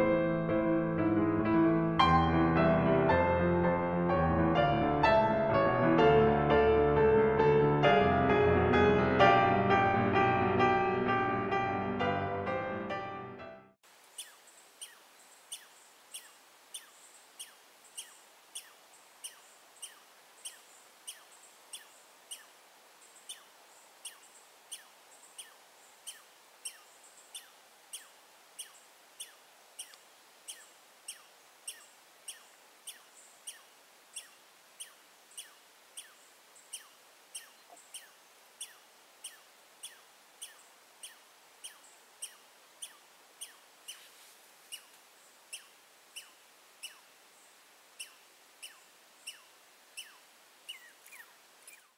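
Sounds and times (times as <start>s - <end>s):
faint background hiss: 13.8s - 51.9s.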